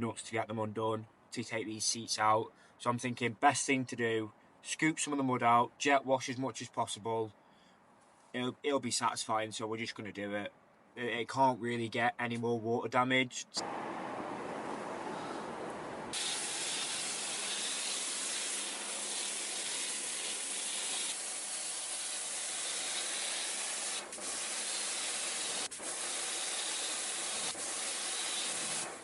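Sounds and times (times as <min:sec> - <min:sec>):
pressure washer spraying water: 0:13.6 - 0:29.0.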